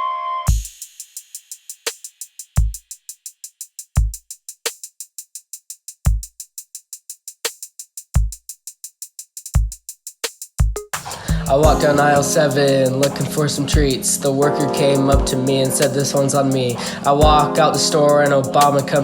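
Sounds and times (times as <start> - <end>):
fast ticking hi-hats: 0.5 - 19.0
sharp snare-like hit: 11.0 - 13.9
deep booming kicks: 11.3 - 11.9.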